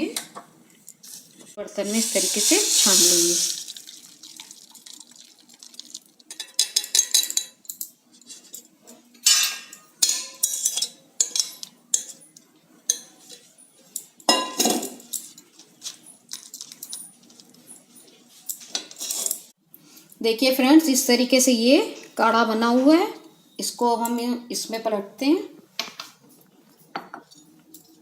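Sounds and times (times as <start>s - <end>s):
utensils clattering: 1.9s - 3.8s, 6.3s - 19.5s
metal utensils clinking on a pot: 6.3s - 15.7s.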